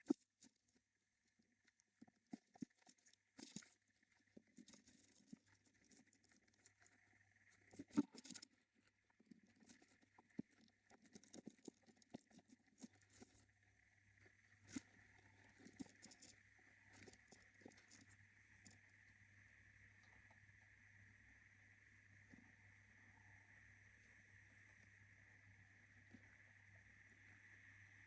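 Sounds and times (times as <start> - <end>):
bird scratching and rustling: 2.0 - 13.6, 14.2 - 18.8.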